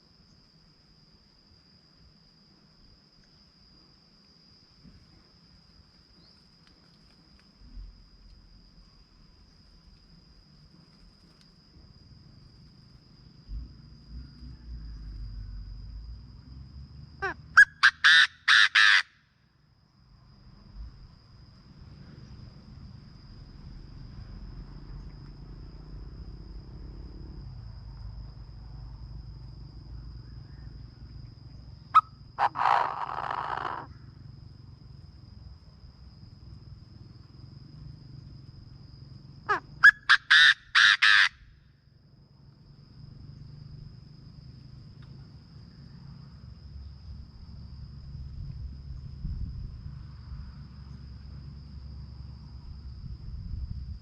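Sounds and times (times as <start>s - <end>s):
francolin calling: 17.2s - 19.2s, 32.0s - 34.0s, 39.5s - 41.5s.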